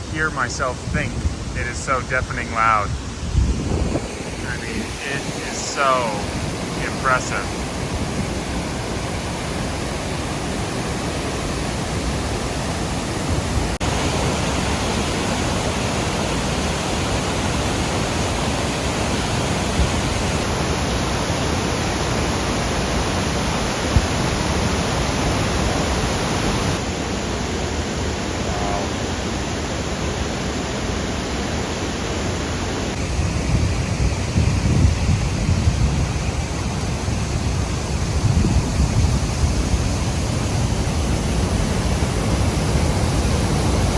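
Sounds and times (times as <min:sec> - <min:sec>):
low rumble gusts: 0:00.0 - 0:13.8
roar of falling water: 0:28.1 - 0:29.6.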